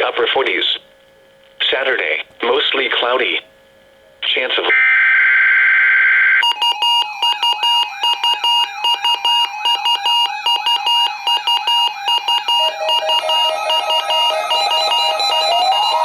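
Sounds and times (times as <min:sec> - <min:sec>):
harsh digital data warble: 0:12.1 - 0:16.0.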